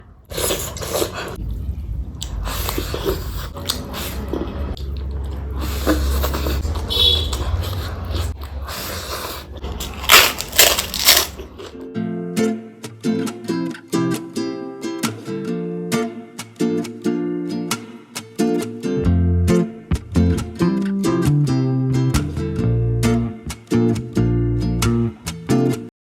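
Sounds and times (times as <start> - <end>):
low rumble: 1.3 - 7.4
chewing and crunching: 2.2 - 11.8.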